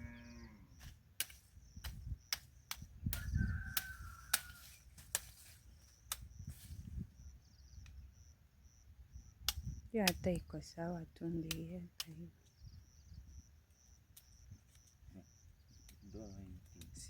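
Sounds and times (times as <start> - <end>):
sharp clicks and snaps: 9.4 - 10.2, 11.4 - 12.2.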